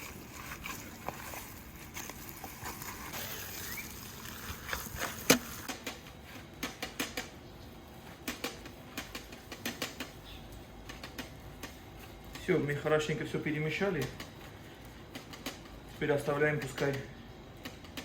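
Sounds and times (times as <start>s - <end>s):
wet squishes of kneading meat: 0.0s - 6.6s.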